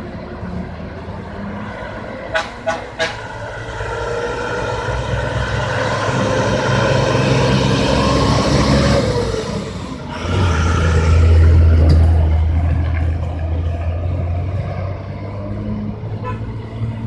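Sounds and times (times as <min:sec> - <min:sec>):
heavy diesel engines running: 0:00.0 - 0:17.0.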